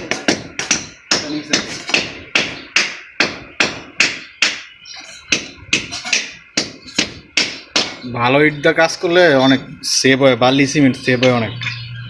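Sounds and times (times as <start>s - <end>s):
hammer striking brick: 0.0s - 4.7s, 5.3s - 8.0s.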